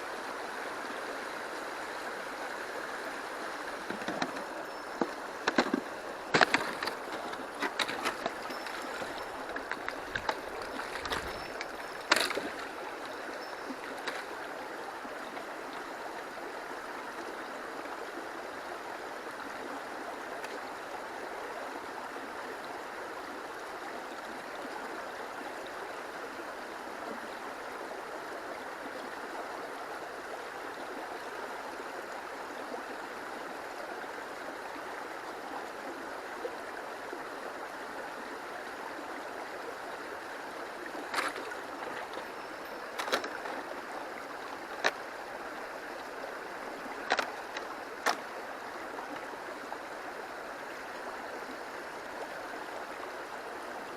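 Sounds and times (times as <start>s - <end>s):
stream water rushing: 0.0s - 53.9s
sharp clicks or knocks: 3.9s - 12.6s.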